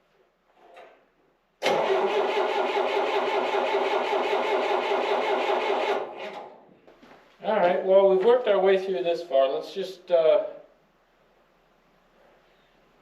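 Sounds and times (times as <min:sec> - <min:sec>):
starter cranking engine: 0:01.6 - 0:06.4.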